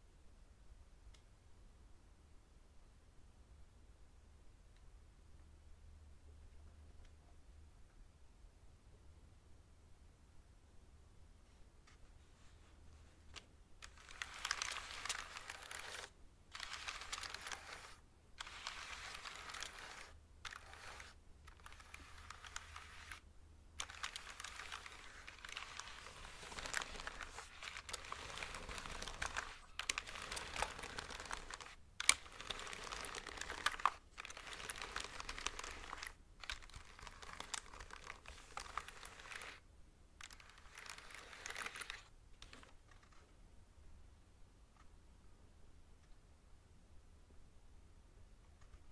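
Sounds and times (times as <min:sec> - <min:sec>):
typing on mechanical keyboard: 0:13.8 - 0:23.2, 0:23.8 - 0:39.6, 0:40.2 - 0:43.2.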